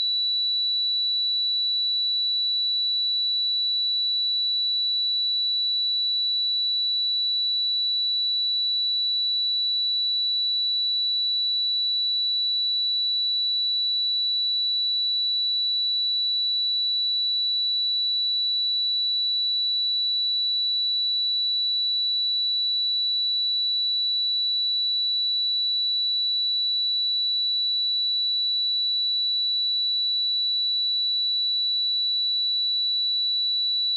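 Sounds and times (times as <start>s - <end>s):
sine-wave test tone: 0.0s - 33.9s.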